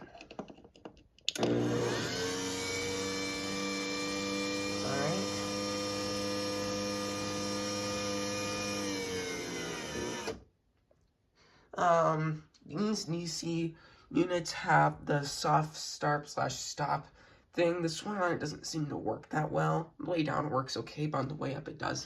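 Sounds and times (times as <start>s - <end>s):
garage door opener motor humming: 1.4s - 10.4s.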